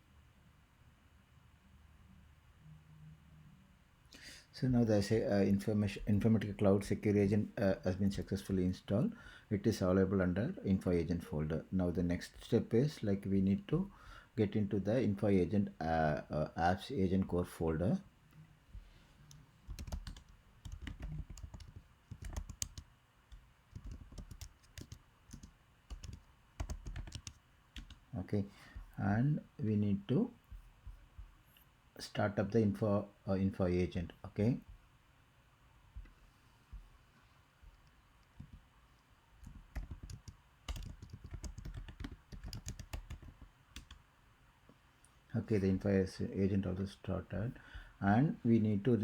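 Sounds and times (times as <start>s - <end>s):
keyboard typing clicks: 19.7s - 28.0s, 39.4s - 44.0s.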